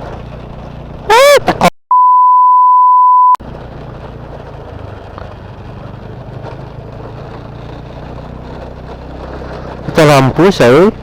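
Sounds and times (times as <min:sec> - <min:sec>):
scooter engine humming: 0:00.0 - 0:01.3, 0:03.4 - 0:11.0
censor bleep: 0:01.9 - 0:03.4.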